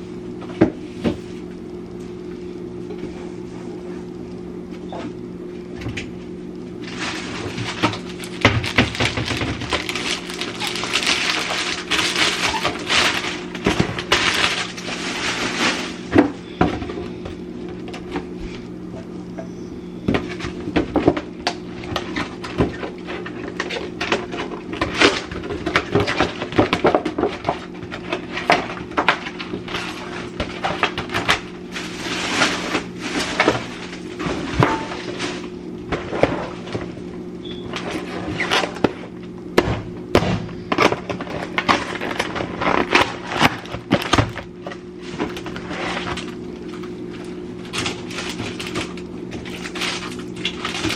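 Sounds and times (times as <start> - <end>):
steady low hum: 0.0 - 50.9
rubbing or rustling: 9.8 - 16.1.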